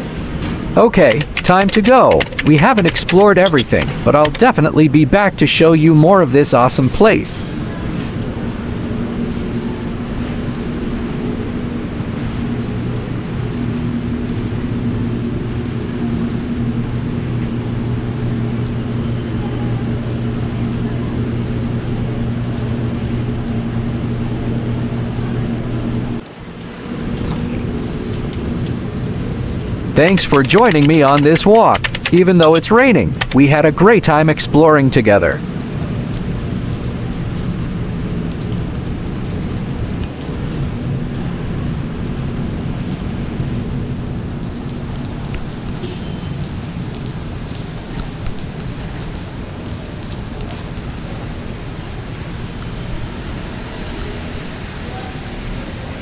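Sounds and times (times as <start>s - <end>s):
low mechanical hum: 0.0s - 55.9s
raindrop ticks: 0.9s - 4.7s, 30.0s - 33.7s
steady rain falling: 26.4s - 29.9s, 35.4s - 56.0s.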